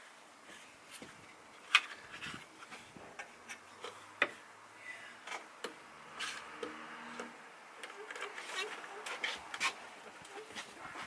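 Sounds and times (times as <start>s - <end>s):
hand tools clicking and tapping: 5.2s - 10.5s.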